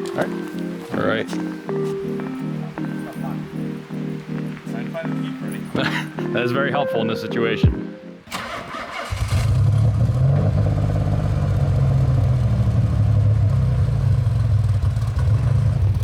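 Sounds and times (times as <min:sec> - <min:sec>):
car engine deep rumble: 0:08.4 - 0:16.0.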